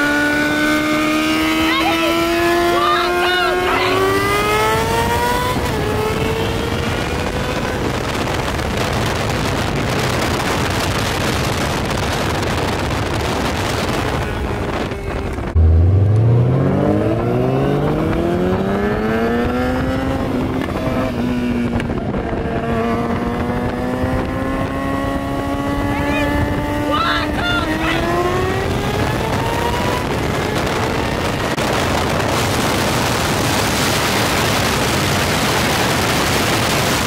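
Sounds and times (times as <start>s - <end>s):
engine and road noise rush: 0.0s - 37.0s
engine at full throttle: 0.0s - 37.0s.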